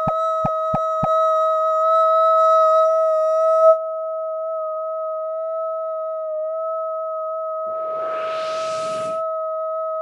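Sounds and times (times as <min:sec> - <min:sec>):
steady electronic tone: 0:07.6 - 0:09.5.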